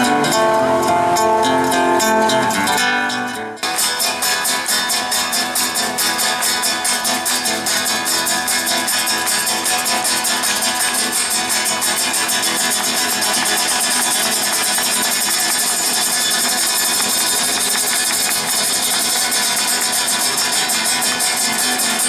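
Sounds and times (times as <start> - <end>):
instrumental music: 0.0 - 22.0.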